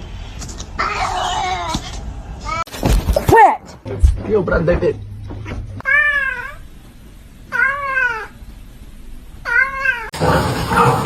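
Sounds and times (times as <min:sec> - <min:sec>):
cat meowing: 0:05.8 - 0:06.6, 0:09.4 - 0:10.1.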